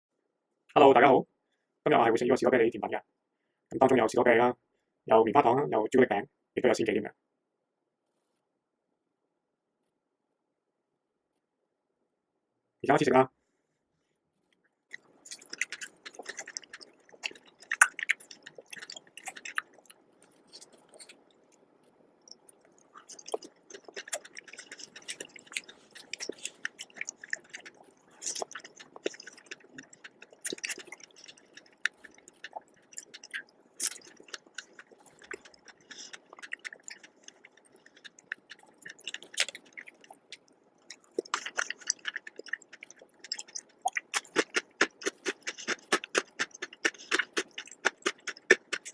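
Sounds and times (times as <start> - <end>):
close chewing and mouth clicks: 14.9 - 48.9.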